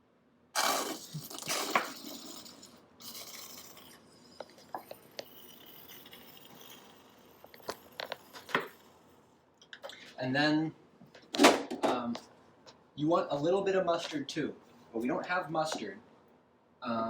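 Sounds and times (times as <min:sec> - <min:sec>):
ketchup bottle sputtering squirt: 0:00.6 - 0:09.2.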